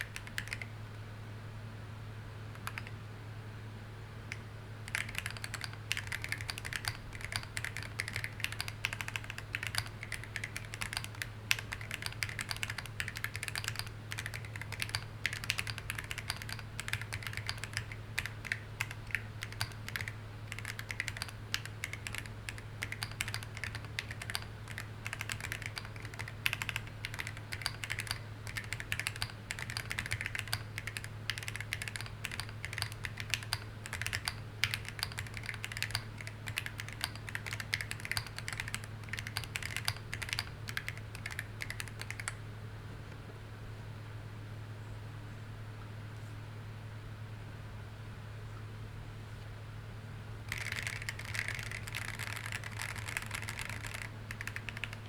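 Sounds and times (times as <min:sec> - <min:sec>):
mechanical keyboard typing: 0:00.0 - 0:00.7, 0:02.6 - 0:02.9, 0:04.3 - 0:42.4, 0:50.5 - 0:55.0.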